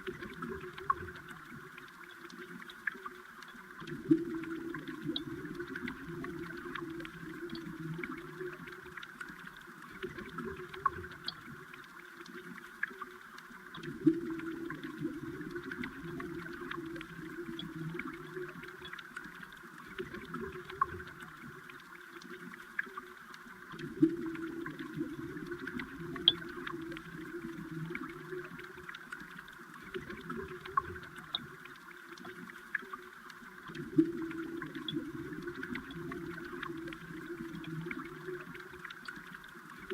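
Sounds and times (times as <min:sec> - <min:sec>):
small clicks and ticks: 0:00.0 - 0:39.9
underwater water flow: 0:00.0 - 0:39.9.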